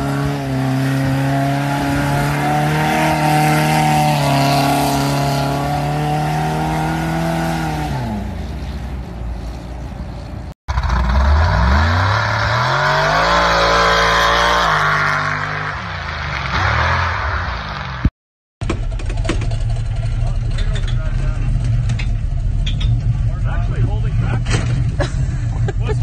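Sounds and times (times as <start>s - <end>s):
vehicle engine revving: 0.0s - 18.1s.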